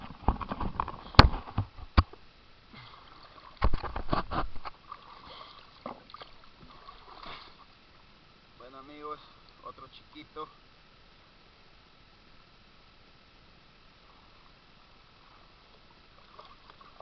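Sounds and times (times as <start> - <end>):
water sloshing in a river: 2.2 - 10.8, 14.0 - 17.0
splashing: 2.7 - 7.9, 15.2 - 17.0.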